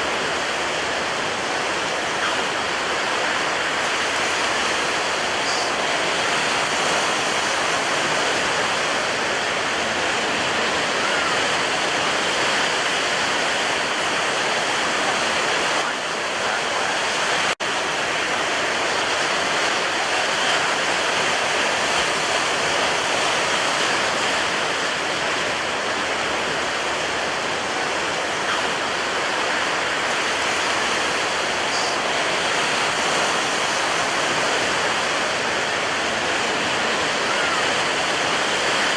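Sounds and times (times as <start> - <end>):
ocean surf rushing: 0.0 - 38.9.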